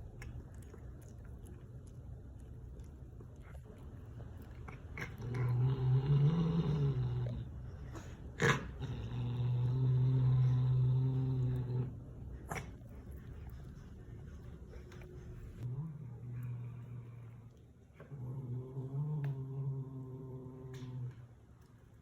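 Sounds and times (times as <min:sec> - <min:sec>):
cat growling: 0:04.5 - 0:13.0.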